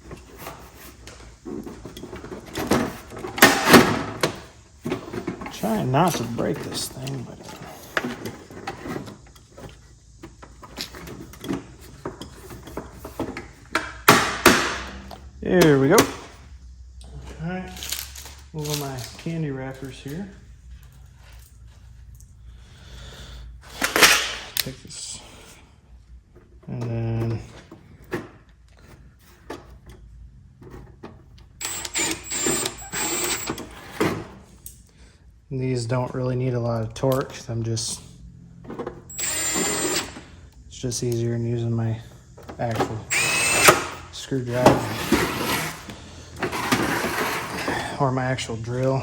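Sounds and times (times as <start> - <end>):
electric screwdriver motor whine: 31.6 - 33.8, 39.1 - 40.2, 43.1 - 43.9.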